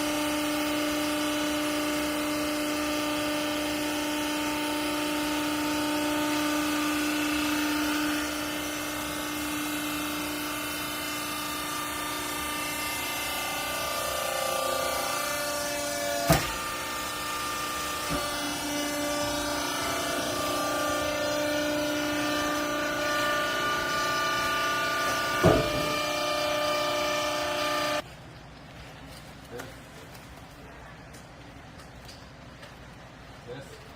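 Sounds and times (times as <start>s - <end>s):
hydraulic motor and pump whining: 0.0s - 28.1s
sharp knocks: 25.3s - 26.0s.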